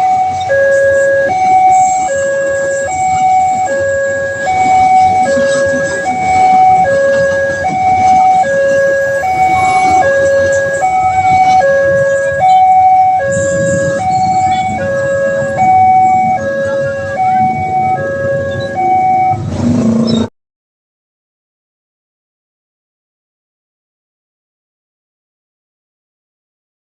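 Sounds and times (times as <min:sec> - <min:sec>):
level crossing two-tone alarm: 0:00.0 - 0:19.5.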